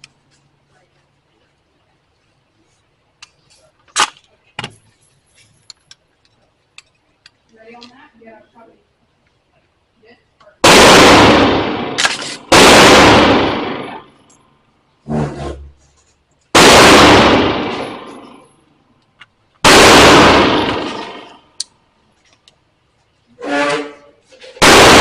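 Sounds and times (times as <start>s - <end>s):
gunshots: 10.6s - 14.2s, 16.5s - 18.5s, 19.6s - 21.5s, 24.6s - 25.0s.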